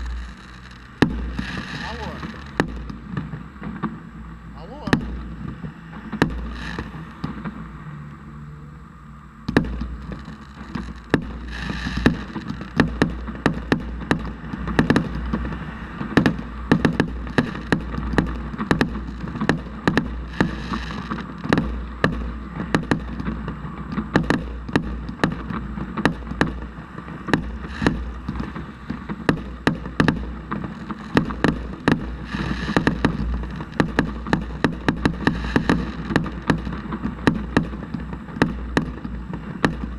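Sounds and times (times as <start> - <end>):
fireworks hissing: 0.0 - 3.4, 4.6 - 7.6, 9.6 - 15.5, 16.3 - 23.4, 24.0 - 39.9
fireworks bangs: 0.0 - 7.6, 9.5 - 39.9
low rumble: 0.0 - 11.5.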